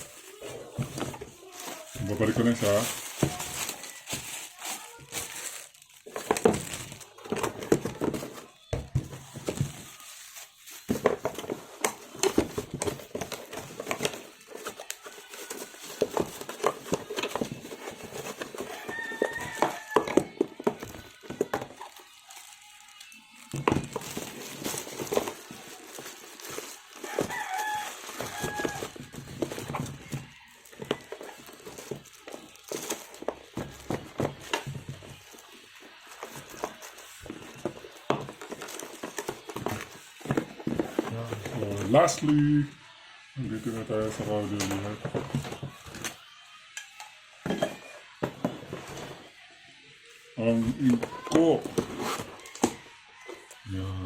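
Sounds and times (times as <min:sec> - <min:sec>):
handling clatter of tools: 0:00.0 - 0:42.3
packaging rustling: 0:00.0 - 0:42.3, 0:50.9 - 0:53.6.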